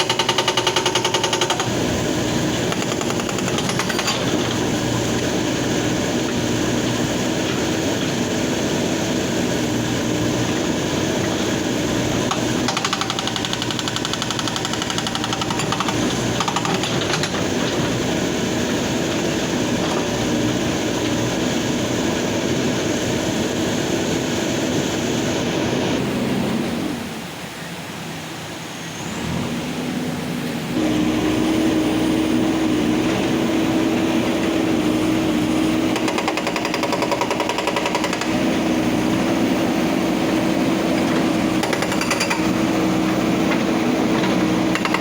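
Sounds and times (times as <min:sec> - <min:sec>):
hydraulic breaker hammering stone: 0:00.0 - 0:05.4, 0:11.4 - 0:20.2, 0:33.4 - 0:45.0
engine running: 0:29.0 - 0:45.0.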